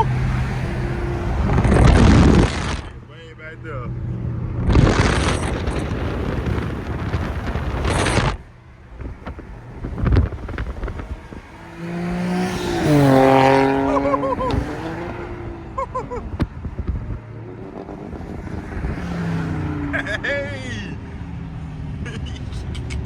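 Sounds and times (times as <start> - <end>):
loud rush of noise: 0.0 - 15.5
car engine and exhaust: 0.0 - 23.0.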